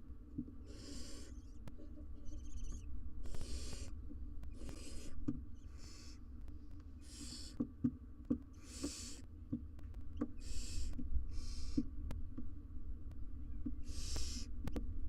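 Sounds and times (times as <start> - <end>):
steady low hum: 0.0 - 15.0
owls hissing calls: 0.7 - 1.5, 2.3 - 3.9, 4.6 - 6.2, 7.0 - 7.6, 8.6 - 9.2, 10.4 - 11.8, 13.8 - 14.6.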